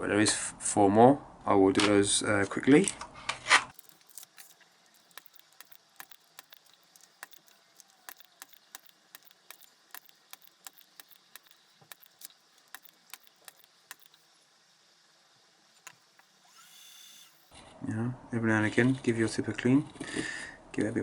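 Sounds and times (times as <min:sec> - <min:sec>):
tools clicking on circuit board: 0:03.7 - 0:14.2.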